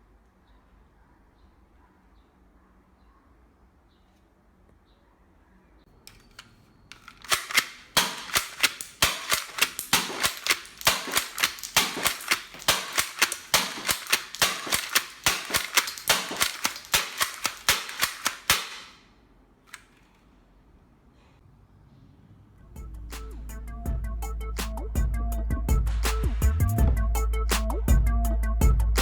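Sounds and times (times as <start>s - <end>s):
toy gun snapping clicks: 6.1s - 19.0s, 19.7s - 20.1s.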